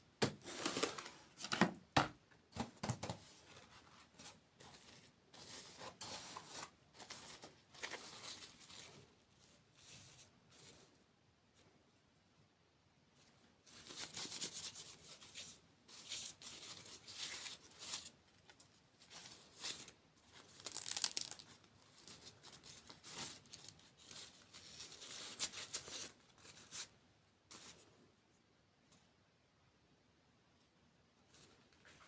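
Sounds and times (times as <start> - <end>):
plastic packaging crinkling and tearing: 19.5 - 26.1.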